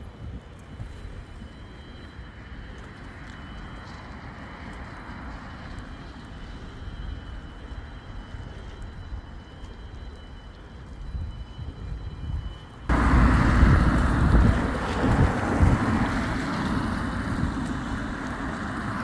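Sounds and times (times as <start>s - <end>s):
low traffic rumble: 12.4s - 19.0s
tyres hissing on wet road: 12.9s - 19.0s.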